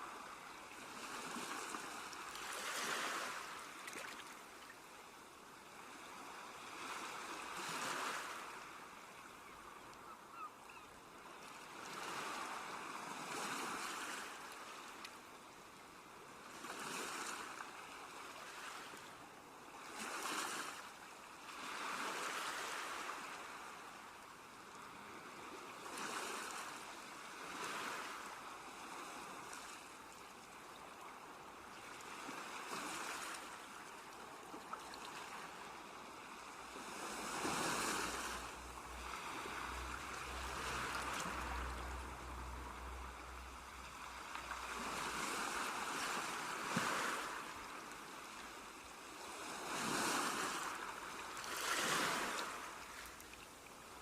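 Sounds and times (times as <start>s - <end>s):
sea waves washing onto shore: 31.9s - 54.0s.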